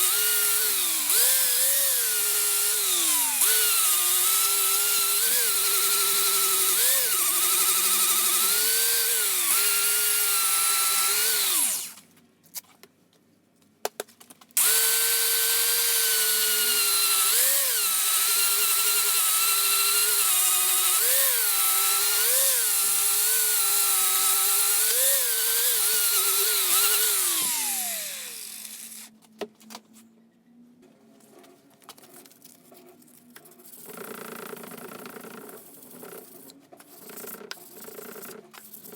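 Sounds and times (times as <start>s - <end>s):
electric power tool whining: 0.0s - 12.0s, 14.6s - 29.1s.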